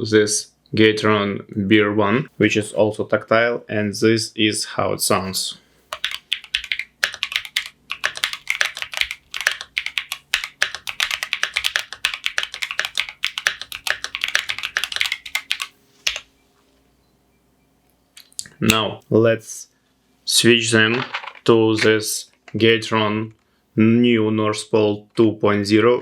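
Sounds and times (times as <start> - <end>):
fast typing on mechanical keyboard: 5.9 - 16.2.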